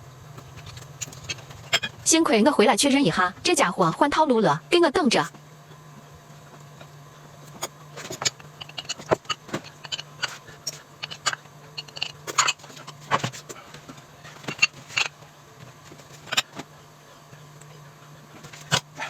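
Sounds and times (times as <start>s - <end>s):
low steady hum: 0.0s - 19.0s
dishes and utensils clattering: 0.4s - 2.0s, 7.6s - 15.2s, 15.9s - 16.7s.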